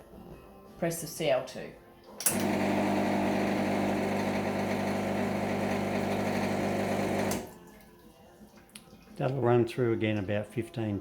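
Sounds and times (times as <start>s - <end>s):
espresso machine pump humming: 2.3s - 7.5s.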